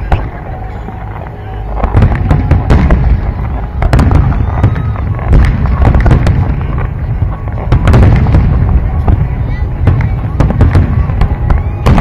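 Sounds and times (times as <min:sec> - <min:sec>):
fireworks bangs and crackles: 0:00.0 - 0:12.0
deep booming: 0:01.7 - 0:12.0.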